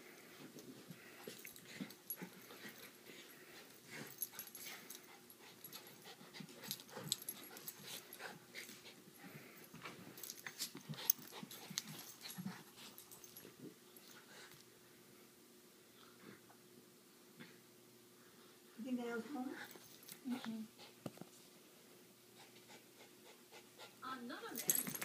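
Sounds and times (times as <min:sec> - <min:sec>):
wheezy panting: 0:00.8 - 0:13.3, 0:22.3 - 0:24.2.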